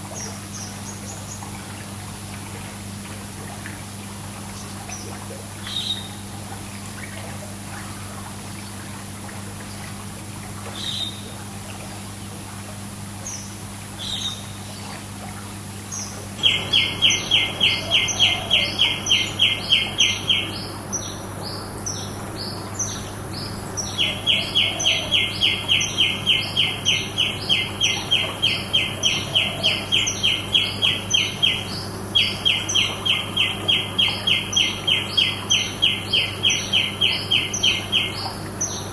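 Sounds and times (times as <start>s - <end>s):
low steady hum: 0.0s - 38.9s
running pool water: 0.0s - 38.9s
birds chirping: 13.2s - 14.9s, 15.8s - 38.9s.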